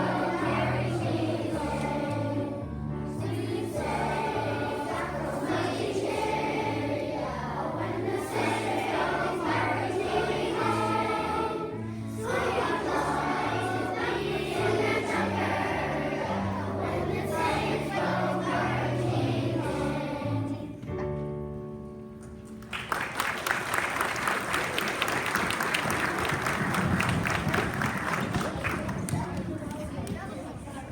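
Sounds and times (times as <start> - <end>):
choir singing: 0.0 - 20.8.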